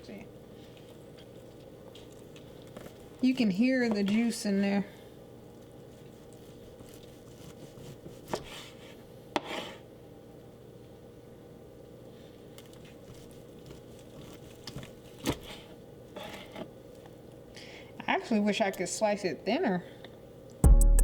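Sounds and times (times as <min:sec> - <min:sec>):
knife slicing meat: 0:05.9 - 0:09.8, 0:12.8 - 0:16.6.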